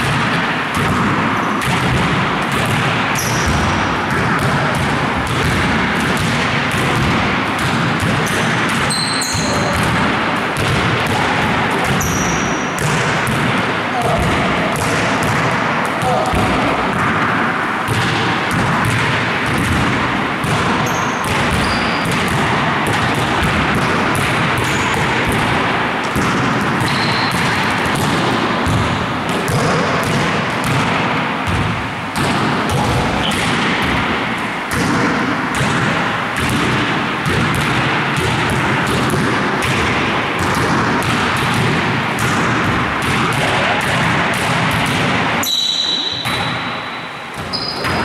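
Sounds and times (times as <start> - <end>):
basketballs bouncing on floor: 0.0 - 48.0
short high squeaks: 8.9 - 9.7, 20.8 - 22.0, 26.9 - 27.3, 45.4 - 46.3, 47.5 - 47.9.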